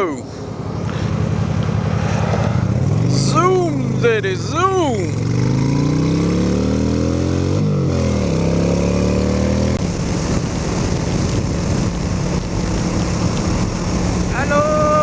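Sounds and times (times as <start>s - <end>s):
motorcycle engine revving: 0.0s - 15.0s
wind rushing over microphone: 0.0s - 15.0s.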